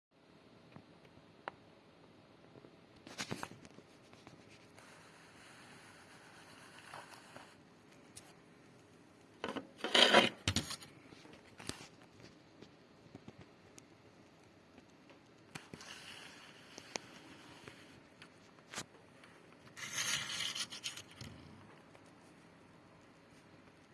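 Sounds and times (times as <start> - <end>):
scraping and rubbing: 3.1 - 7.6, 9.4 - 10.8, 19.6 - 21.5.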